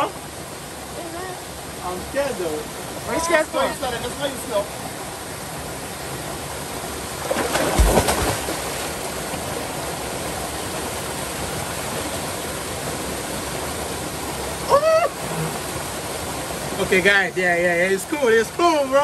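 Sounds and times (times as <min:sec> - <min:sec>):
waterfall and stream rushing: 0:00.0 - 0:19.0.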